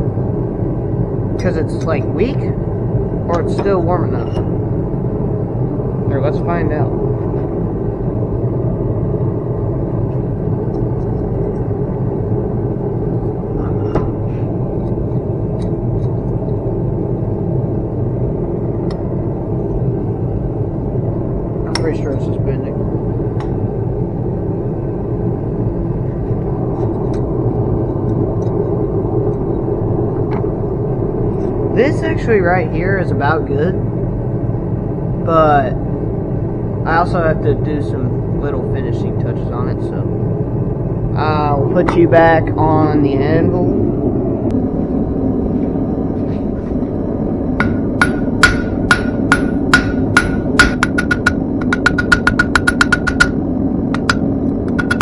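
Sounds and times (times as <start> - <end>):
forge burner rumbling: 0.0 - 55.0
low rushing noise: 0.0 - 55.0
hammer striking steel on anvil: 47.6 - 53.4, 54.0 - 55.0.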